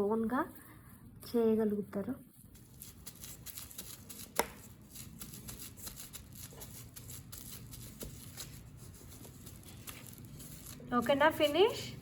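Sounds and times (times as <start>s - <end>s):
hands rustling materials: 2.4s - 11.8s.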